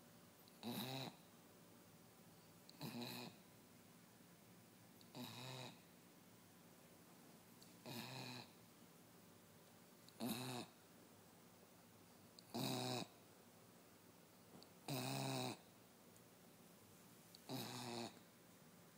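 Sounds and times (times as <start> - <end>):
dog snoring: 0.5 - 1.2, 2.7 - 3.4, 5.1 - 5.8, 7.8 - 8.6, 10.2 - 10.8, 12.5 - 13.2, 14.8 - 15.6, 17.4 - 18.2.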